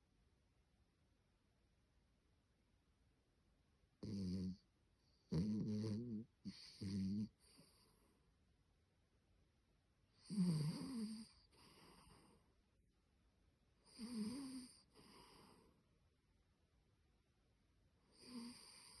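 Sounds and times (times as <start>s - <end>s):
dog snoring: 4.0s - 8.1s, 10.2s - 12.4s, 13.8s - 15.7s, 18.1s - 19.0s
dog breathing softly: 6.5s - 8.2s, 11.1s - 12.5s, 13.9s - 15.8s.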